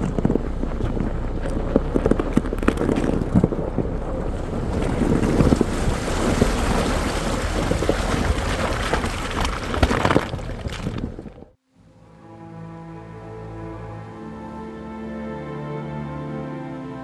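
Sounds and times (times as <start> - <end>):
knocks and thumps: 0.0 - 11.5
vehicle driving noise: 0.0 - 11.5
wind buffeting microphone: 0.0 - 11.6.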